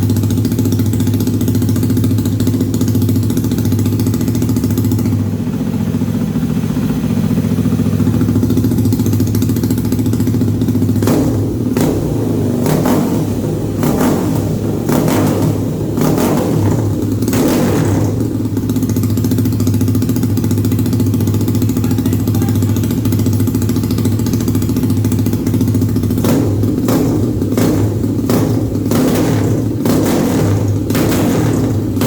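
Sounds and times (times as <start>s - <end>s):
single-cylinder engine revving: 0.0s - 32.0s.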